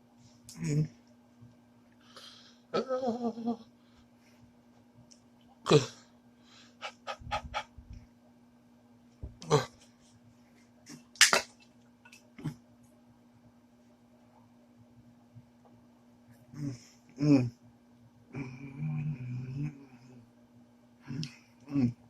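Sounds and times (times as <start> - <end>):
man groaning: 16.6 - 17.6, 21.1 - 22.0.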